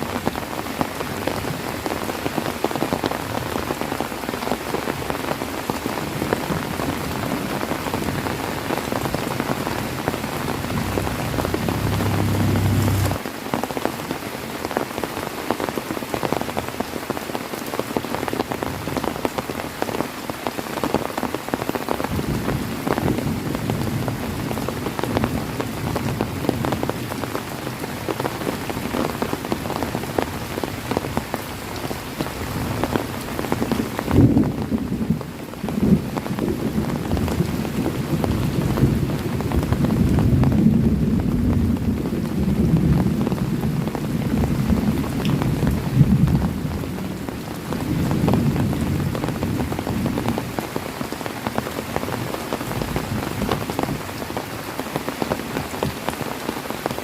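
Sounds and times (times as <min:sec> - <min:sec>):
heavy rain falling: 0:00.0 - 0:57.0
low rumble: 0:09.8 - 0:13.2.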